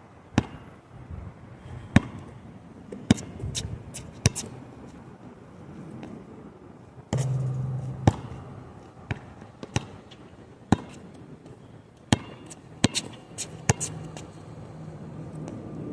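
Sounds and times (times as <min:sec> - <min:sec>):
basketball bouncing on hard court: 0:07.2 - 0:08.5
low steady hum: 0:07.2 - 0:10.0.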